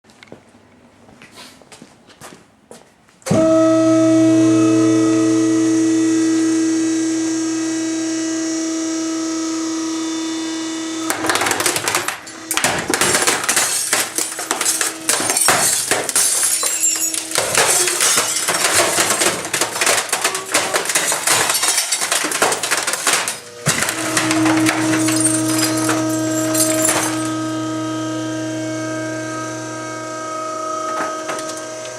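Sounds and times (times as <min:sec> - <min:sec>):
compactor motor humming: 0:03.3 - 0:31.9
plastic and glass cracking: 0:11.1 - 0:27.2.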